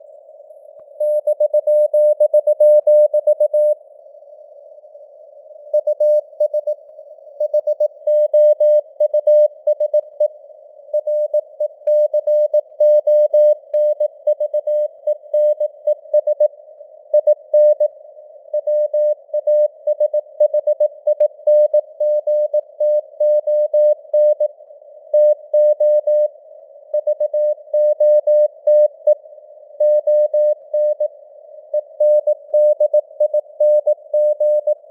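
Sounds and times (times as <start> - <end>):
faint radio static hiss: 0.0 - 1.2, 3.8 - 8.0.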